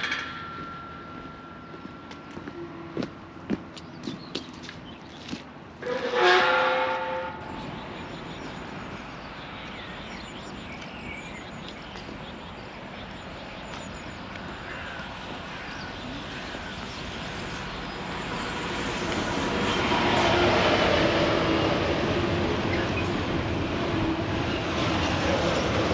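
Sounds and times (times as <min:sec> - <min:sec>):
birds chirping: 0:00.0 - 0:05.5, 0:07.4 - 0:19.8, 0:22.5 - 0:25.4
train rumble: 0:00.0 - 0:25.9
train horn blast: 0:05.8 - 0:07.6.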